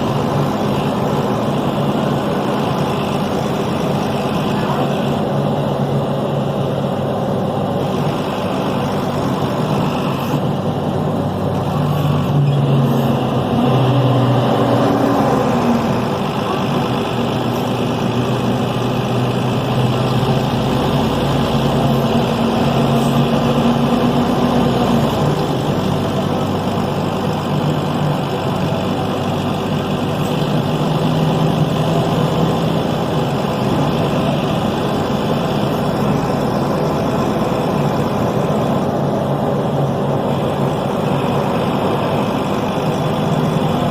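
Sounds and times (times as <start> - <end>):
bus diesel engine revving: 0.0 - 43.9.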